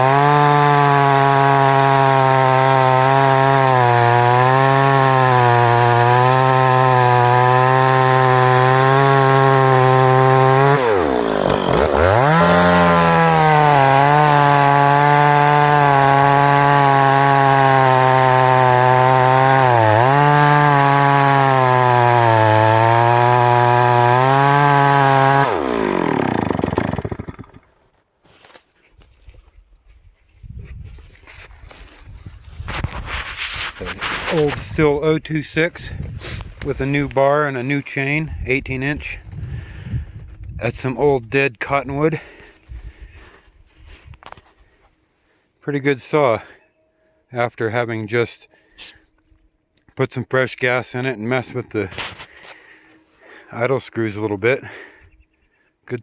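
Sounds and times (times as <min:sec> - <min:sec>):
chainsaw cutting wood: 0:00.0 - 0:29.1, 0:31.7 - 0:34.8.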